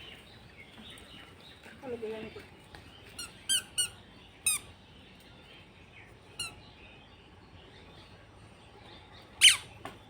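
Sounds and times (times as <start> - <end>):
high squeaky bird chirp: 3.2 - 4.7, 6.4 - 6.6, 9.4 - 9.8.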